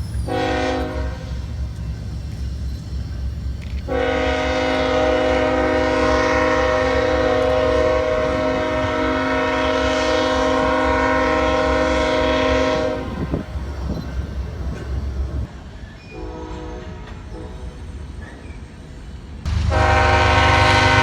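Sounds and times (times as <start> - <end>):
locomotive air horn chord: 0.3 - 1.5, 3.9 - 13.5, 16.2 - 17.7, 19.5 - 21.0.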